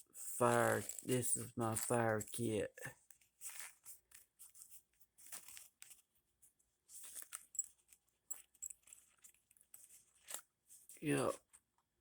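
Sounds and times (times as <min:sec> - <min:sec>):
fabric pouch rustling: 0:03.0 - 0:11.7.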